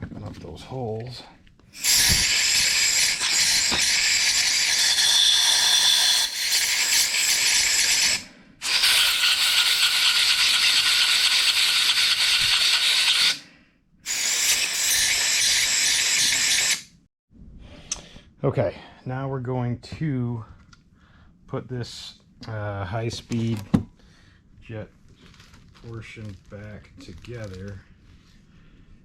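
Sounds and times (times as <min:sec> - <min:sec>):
compressed air hissing: 0:01.7 - 0:13.4, 0:14.0 - 0:16.9.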